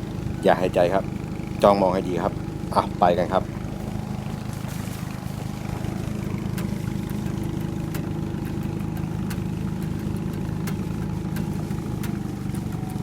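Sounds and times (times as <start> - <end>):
small engine idling: 0.0 - 13.0
sharp clicks: 5.3 - 13.0.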